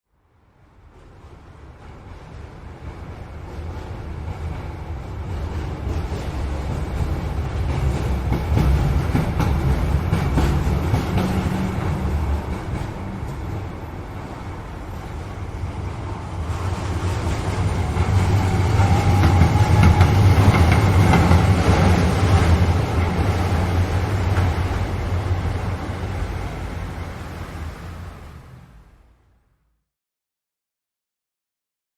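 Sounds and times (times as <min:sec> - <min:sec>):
train rumble and rail clatter: 0:00.2 - 0:29.4.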